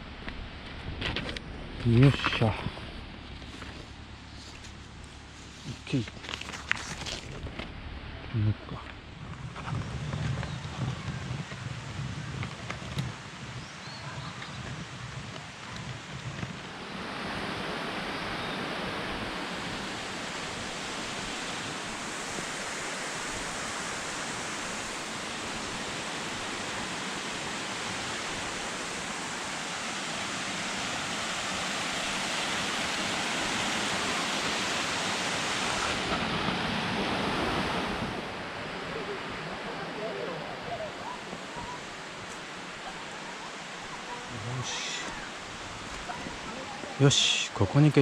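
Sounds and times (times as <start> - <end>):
river water rushing over rocks: 16.5 - 48.0.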